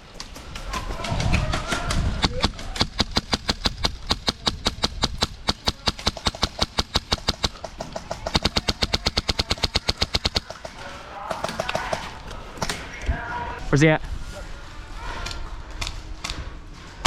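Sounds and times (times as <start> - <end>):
airsoft gun firing: 1.8 - 12.7.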